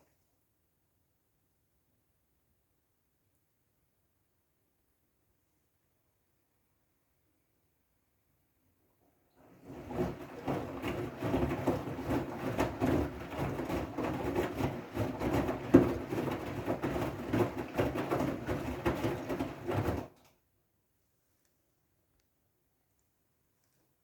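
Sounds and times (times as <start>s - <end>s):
washing machine motor hum: 9.3s - 20.2s
water swishing: 9.4s - 20.1s.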